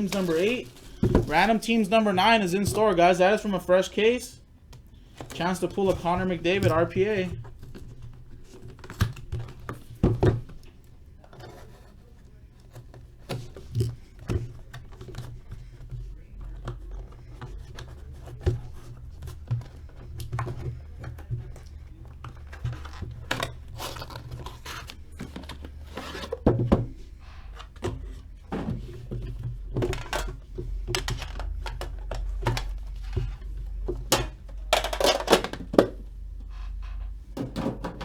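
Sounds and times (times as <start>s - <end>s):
wrapper rustling: 0.0s - 2.9s
steady low hum: 13.5s - 38.0s.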